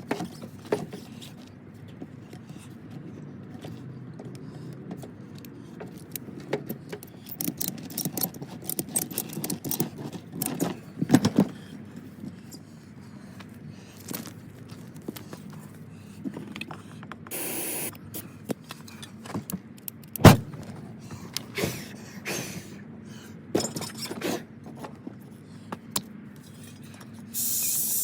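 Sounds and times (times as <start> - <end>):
aerosol can hissing: 17.3 - 17.9, 27.4 - 28.0
loud bang of ignition: 20.2 - 20.6.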